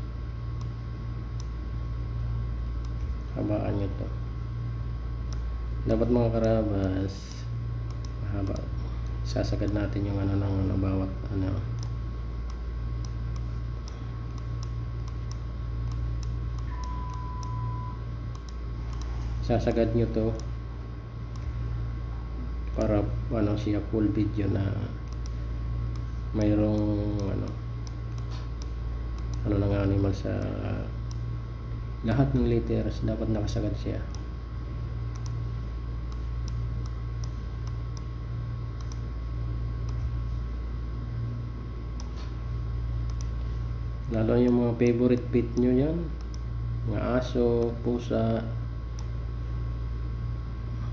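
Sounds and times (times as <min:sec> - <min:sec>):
low electrical hum: 0:00.0 - 0:50.9
thin steady tone: 0:05.9 - 0:20.5
light irregular clicks: 0:06.3 - 0:09.9, 0:11.7 - 0:17.6, 0:18.3 - 0:20.6, 0:25.0 - 0:29.5, 0:35.1 - 0:35.4, 0:36.1 - 0:38.1, 0:38.8 - 0:39.0, 0:43.0 - 0:43.4, 0:44.0 - 0:46.5
faint high ticks: 0:35.1 - 0:35.4.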